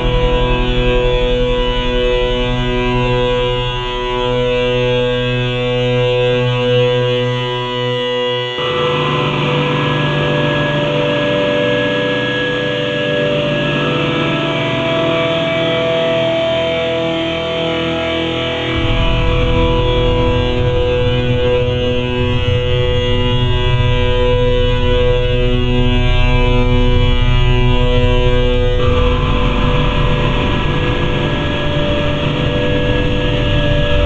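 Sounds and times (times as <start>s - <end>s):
distorted grainy wash: 0.0s - 5.8s, 18.7s - 34.0s
deep bass: 0.0s - 8.1s, 18.4s - 34.0s
droning guitar-like tones: 0.0s - 34.0s.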